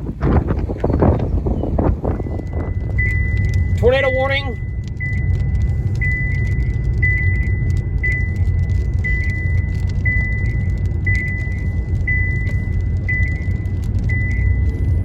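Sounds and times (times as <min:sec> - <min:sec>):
vehicle road rumble: 0:00.0 - 0:15.0
announcement voice: 0:03.7 - 0:04.6.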